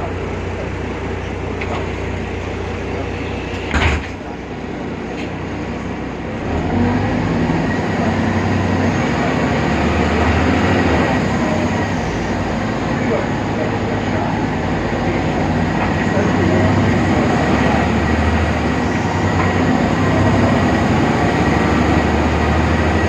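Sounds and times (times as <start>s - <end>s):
bus diesel engine humming: 0.0s - 23.0s
sharp clunk: 3.6s - 4.2s.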